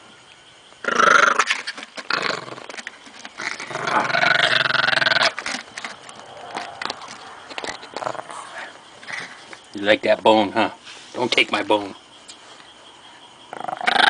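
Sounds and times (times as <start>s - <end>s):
dog growling: 3.4s - 9.4s.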